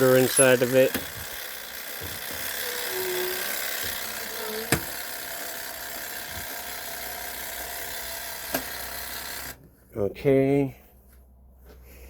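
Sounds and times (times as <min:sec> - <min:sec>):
clockwork motor whirring: 0:00.0 - 0:09.6.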